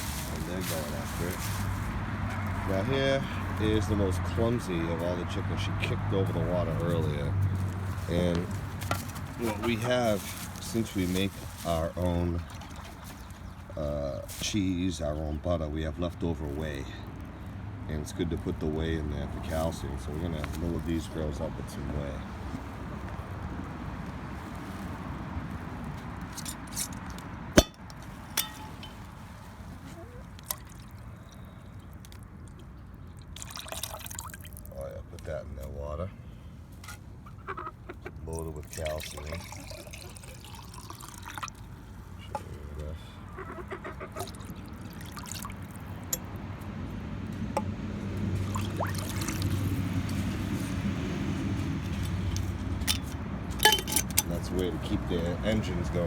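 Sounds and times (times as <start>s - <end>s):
liquid trickling: 8.7s - 13.8s, 27.0s - 34.8s, 38.2s - 42.3s, 44.0s - 46.4s, 48.3s - 50.9s
container clink: 27.6s - 29.1s, 52.8s - 54.3s
liquid pouring: 33.1s - 34.7s, 38.6s - 41.7s, 44.2s - 46.2s, 48.4s - 50.2s.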